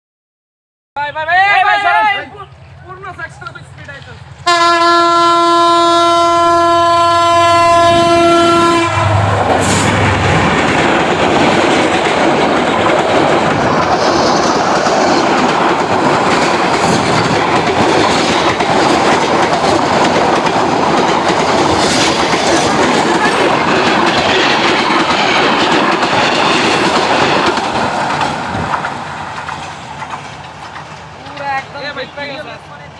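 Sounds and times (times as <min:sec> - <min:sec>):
train wheels running on rails: 0:02.4 - 0:32.9
train horn chord: 0:04.4 - 0:09.7.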